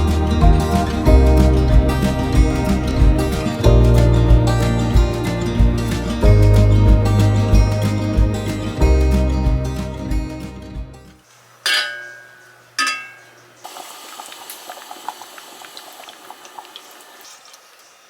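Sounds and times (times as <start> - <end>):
water hissing and popping in pot: 11.2 - 18.0
kitchenware clinking: 11.6 - 13.5.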